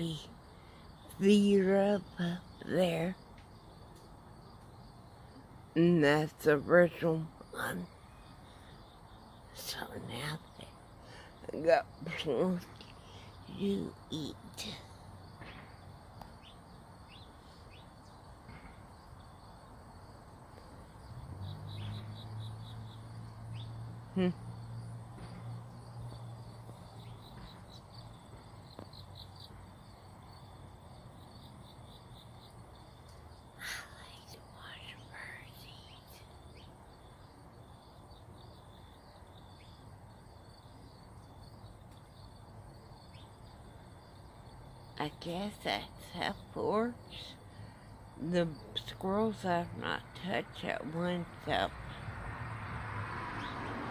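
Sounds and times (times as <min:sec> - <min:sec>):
insects trilling: 0:00.0 - 0:53.9
small birds chirping: 0:07.1 - 0:49.0
falling bird chirp: 0:21.4 - 0:23.8.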